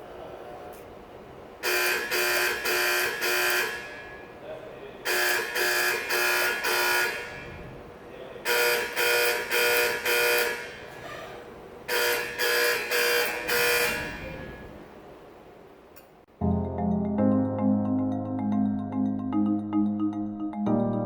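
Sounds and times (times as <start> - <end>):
fire alarm horn blasts: 1.6 - 4.4, 5.0 - 7.8, 8.4 - 11.0, 11.9 - 14.8.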